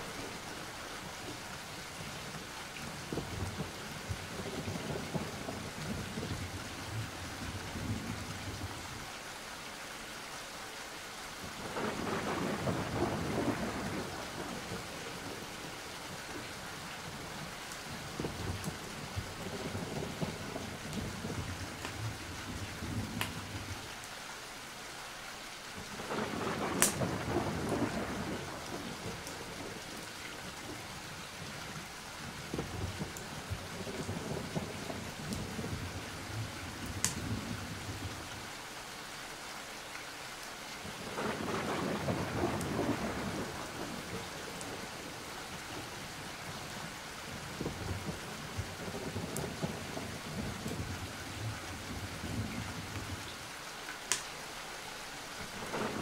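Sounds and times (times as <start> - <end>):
steady rain: 0.0 - 56.0
rolls of thunder: 3.1 - 8.8, 11.6 - 15.4, 18.1 - 23.7, 25.9 - 30.0, 32.2 - 38.2, 40.8 - 45.2, 47.3 - 53.3, 55.4 - 56.0.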